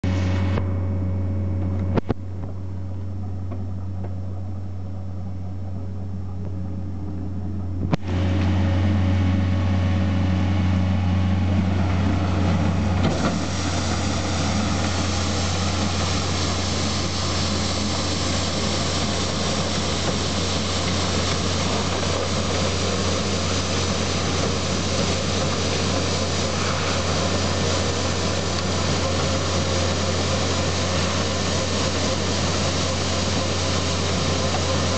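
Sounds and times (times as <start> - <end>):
skid steer engine running: 0.0 - 34.9
loud steady hiss: 11.4 - 34.9.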